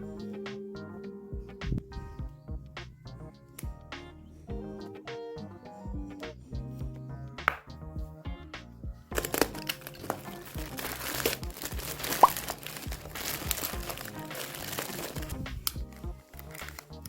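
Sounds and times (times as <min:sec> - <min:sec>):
background music: 0:00.0 - 0:17.0
packaging crinkling: 0:09.2 - 0:17.0.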